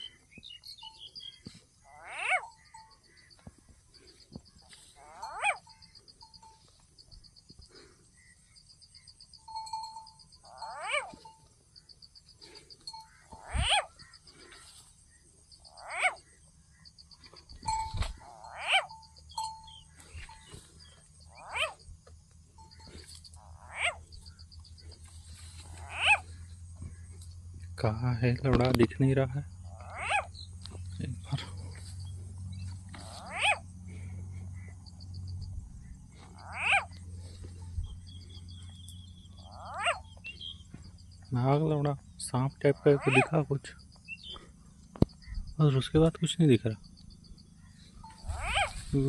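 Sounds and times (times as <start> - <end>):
animal crying: 1.8 - 3.4, 4.8 - 6.0, 10.4 - 11.4, 12.4 - 14.9, 15.7 - 16.4, 18.1 - 21.9, 22.7 - 24.2, 25.6 - 27.0, 29.7 - 30.4, 32.9 - 34.8, 36.2 - 40.4, 42.7 - 43.4, 47.5 - 49.0.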